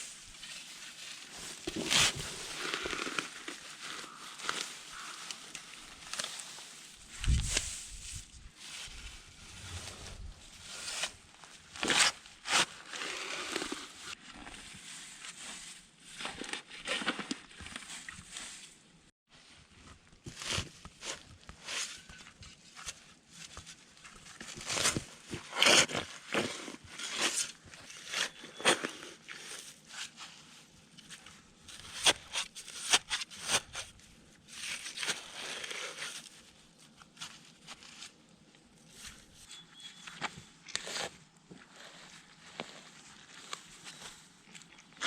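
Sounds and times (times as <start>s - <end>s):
shovel scraping wet clay soil: 0.0s - 8.2s, 8.9s - 18.6s, 24.4s - 30.2s, 39.0s - 45.0s.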